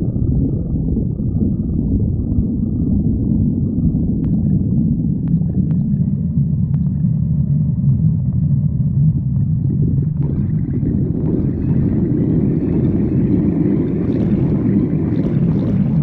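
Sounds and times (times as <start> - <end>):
stomach growling: 0.0 - 16.0.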